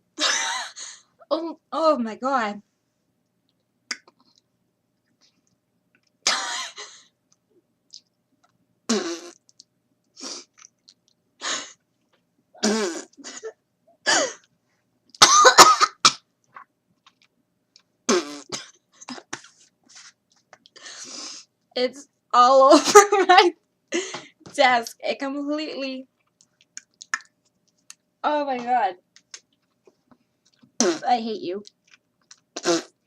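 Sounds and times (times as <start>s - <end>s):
woman coughing: 6.3s - 6.9s, 13.2s - 14.4s, 15.2s - 16.2s.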